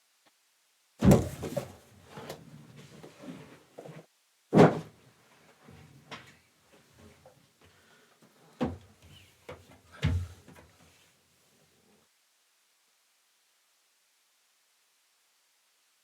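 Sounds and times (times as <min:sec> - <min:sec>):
box knocking down: 0:01.0 - 0:01.8, 0:04.5 - 0:05.0
cardboard rustling and scraping: 0:01.0 - 0:05.0.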